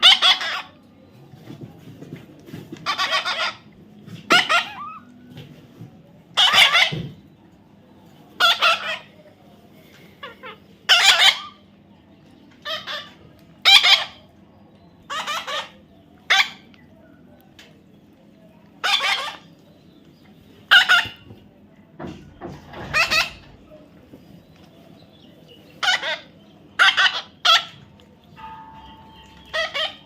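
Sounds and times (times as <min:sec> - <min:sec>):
parrot squawking: 0:00.0 - 0:00.7, 0:02.8 - 0:03.6, 0:04.3 - 0:05.0, 0:08.4 - 0:09.1, 0:10.2 - 0:11.6, 0:12.6 - 0:14.2, 0:15.1 - 0:16.6, 0:18.8 - 0:19.5, 0:20.7 - 0:21.3, 0:22.8 - 0:23.5, 0:25.8 - 0:27.8, 0:29.4 - 0:30.0.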